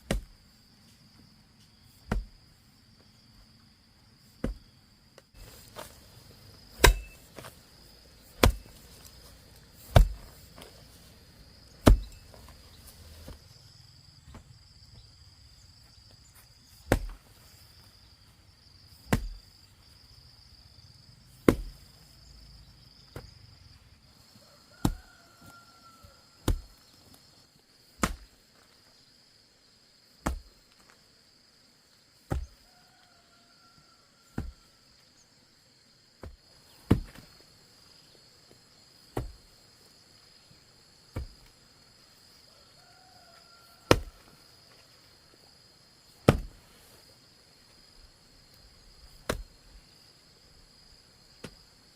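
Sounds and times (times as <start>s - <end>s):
blade chopping sugarcane: 0.0s - 0.4s, 2.0s - 2.4s, 6.7s - 7.5s, 8.2s - 8.9s, 9.8s - 10.8s, 11.8s - 12.4s, 16.8s - 17.2s, 19.1s - 19.4s, 21.4s - 21.8s, 24.8s - 25.1s, 26.4s - 26.8s, 28.0s - 28.4s, 30.2s - 30.5s, 32.3s - 32.6s, 34.4s - 34.6s, 36.2s - 37.3s, 39.1s - 39.5s, 43.9s - 44.2s, 46.2s - 46.6s, 49.2s - 49.5s
insects buzzing: 0.0s - 51.9s.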